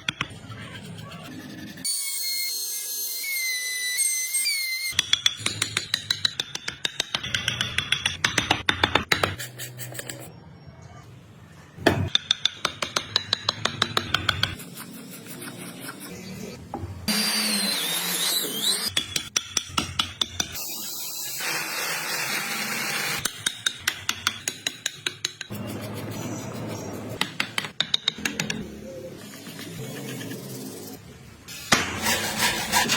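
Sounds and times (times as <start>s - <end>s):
file rasping wood: 31.7s - 32.9s.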